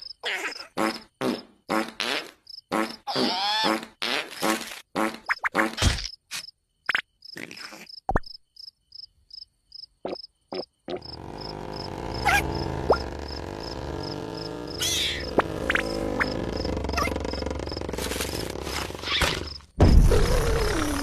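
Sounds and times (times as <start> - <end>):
cricket chirping: 5.3 - 19.8.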